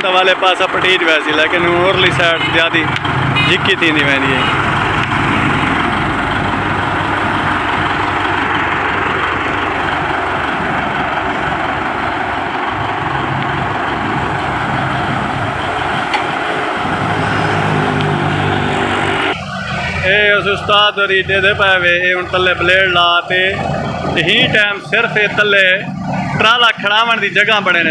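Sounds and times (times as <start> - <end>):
bulldozer diesel engine running: 0.0 - 27.9.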